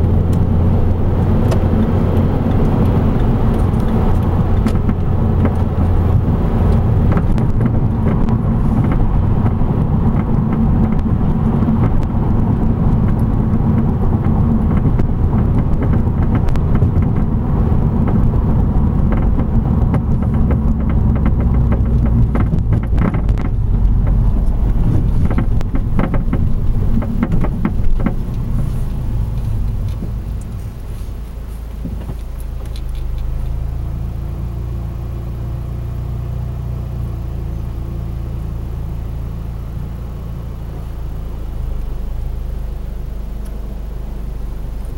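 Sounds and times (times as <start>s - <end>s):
suspension clicks and knocks: 0.0s - 34.0s
road and suspension rumble: 0.0s - 44.9s.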